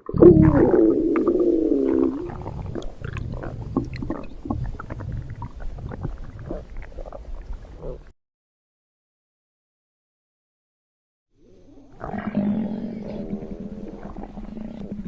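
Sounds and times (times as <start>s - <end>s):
stomach growling: 0.0s - 8.1s, 11.4s - 15.0s.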